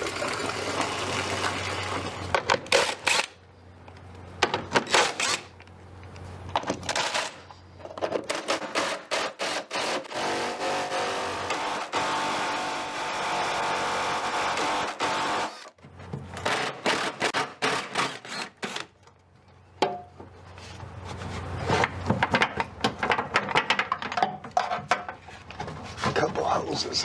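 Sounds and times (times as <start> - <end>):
hand tools clicking and clanking: 15.5 - 27.0.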